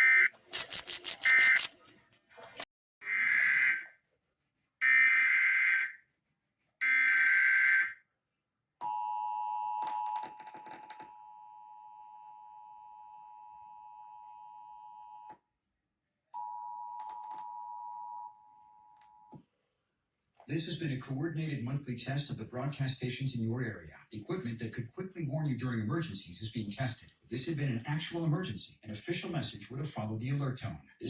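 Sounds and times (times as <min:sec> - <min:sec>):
buzzing digital data bursts: 0:00.3 - 0:02.6.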